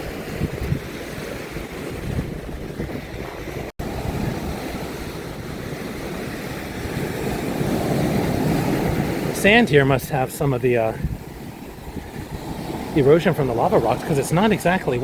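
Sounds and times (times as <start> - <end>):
ocean surf washing onto beach: 0.0 - 15.0
wind buffeting microphone: 0.0 - 15.0.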